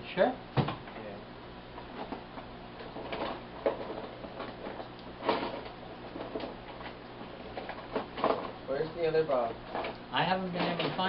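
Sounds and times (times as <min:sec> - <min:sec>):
steady low hum: 0:00.0 - 0:11.0
knocks and clatter of rummaging: 0:02.8 - 0:08.6, 0:09.3 - 0:11.0.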